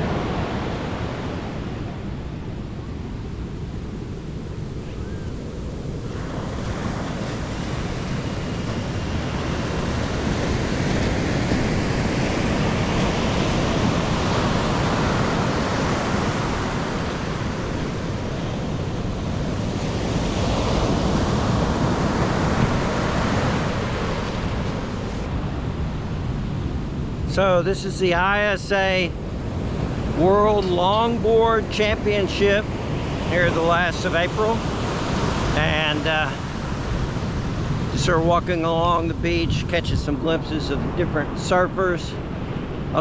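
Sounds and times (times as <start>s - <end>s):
ocean surf breaking: 0.0s - 43.0s
wind rumble on microphone: 0.0s - 43.0s.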